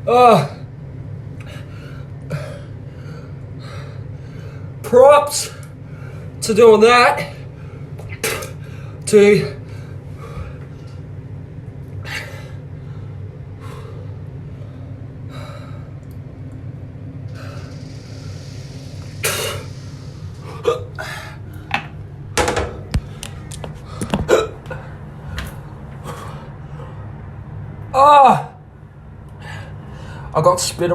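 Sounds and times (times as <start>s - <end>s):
steady low hum: 0.0s - 30.9s
man hiccuping: 8.1s - 8.6s, 20.5s - 21.2s, 24.3s - 24.9s.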